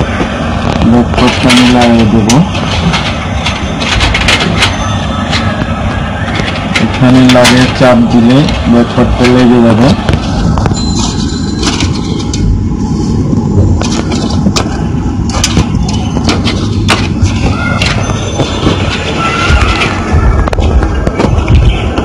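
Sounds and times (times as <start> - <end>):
steady low rumble: 0.0 - 22.0
metal shield clicking and snapping: 15.3 - 18.0.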